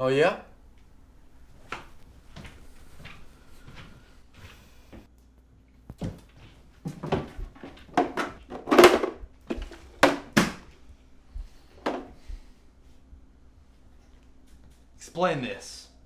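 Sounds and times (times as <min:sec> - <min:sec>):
knocks and thuds: 0:06.9 - 0:10.7, 0:11.8 - 0:12.1.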